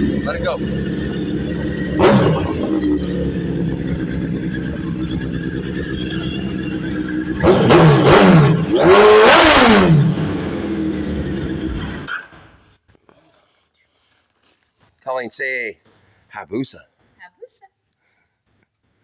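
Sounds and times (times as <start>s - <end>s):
motorcycle engine idling: 0.0s - 8.7s
motorcycle engine revving: 0.0s - 12.1s.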